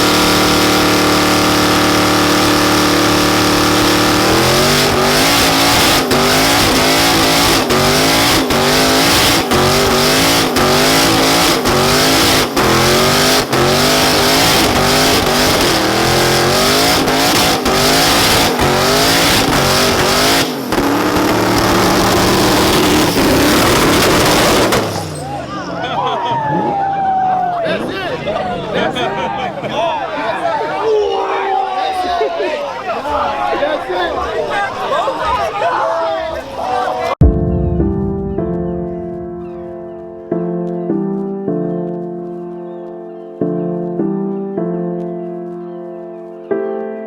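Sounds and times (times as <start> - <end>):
car engine revving: 0.0 - 26.8.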